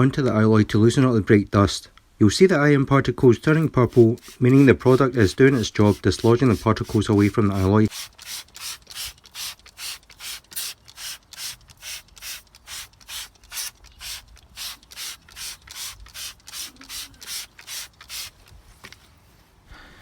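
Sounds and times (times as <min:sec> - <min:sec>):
trigger spray bottle squirting: 0:03.5 - 0:18.5.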